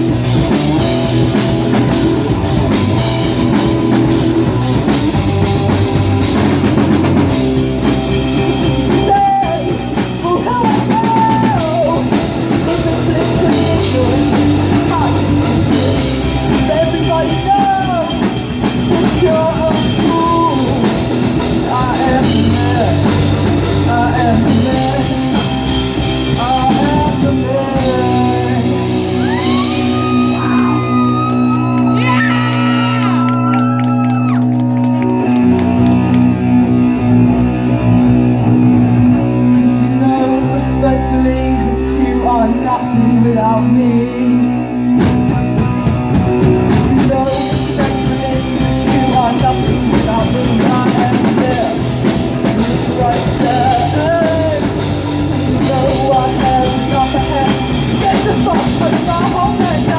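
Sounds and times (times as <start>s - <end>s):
live rock band playing: 0.0s - 59.9s.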